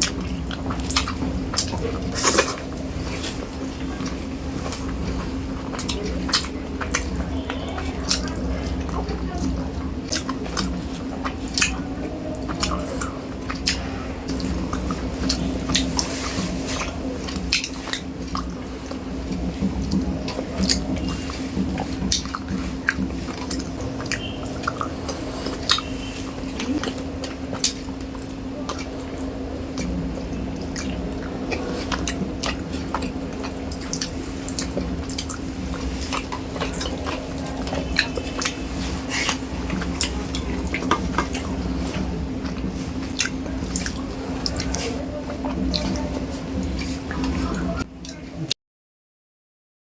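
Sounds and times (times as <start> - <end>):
person chewing with wet mouth sounds: 0.0 - 48.6
steady low hum: 0.0 - 48.6.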